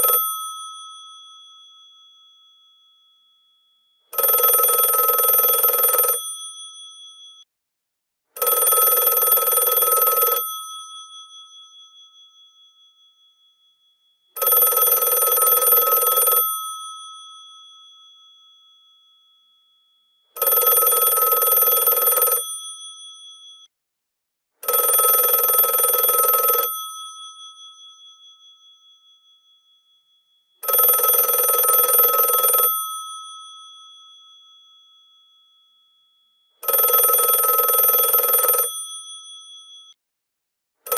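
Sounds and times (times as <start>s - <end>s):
telephone bells ringing: 0.0s - 1.0s, 4.1s - 6.6s, 8.4s - 10.9s, 14.4s - 17.1s, 20.4s - 22.6s, 24.6s - 27.0s, 30.6s - 33.4s, 36.6s - 39.1s.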